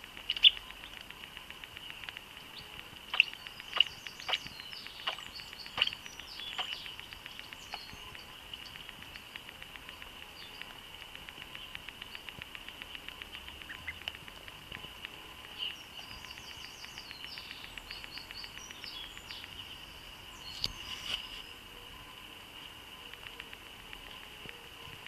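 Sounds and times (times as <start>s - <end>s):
sharp snap: 0.0s - 19.6s
fast pattering tick: 0.0s - 25.0s
duckling peeping: 0.2s - 1.0s, 1.7s - 14.3s.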